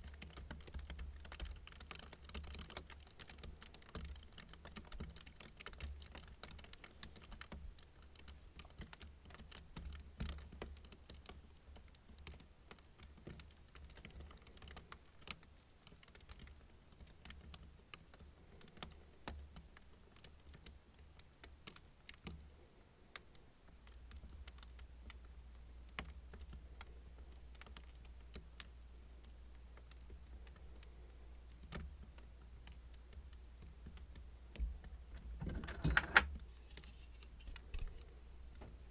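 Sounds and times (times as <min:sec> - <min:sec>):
low steady hum: 0:24.8 - 0:38.9.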